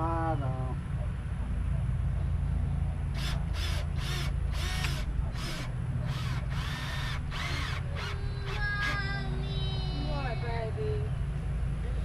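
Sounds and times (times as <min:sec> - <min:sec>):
power drill motor whining: 0:03.2 - 0:09.0.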